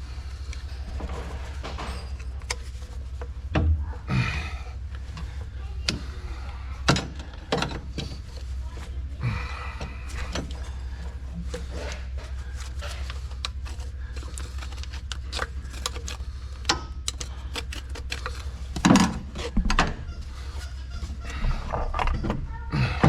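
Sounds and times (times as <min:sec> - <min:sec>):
steady low hum: 0:00.0 - 0:23.0
hand tool metal clicks and knocks: 0:11.5 - 0:19.5.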